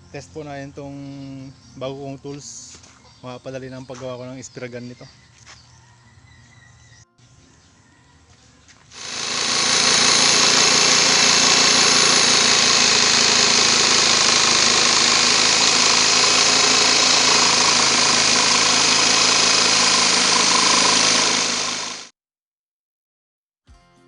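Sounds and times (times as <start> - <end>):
electric jigsaw buzzing: 9.0 - 22.1.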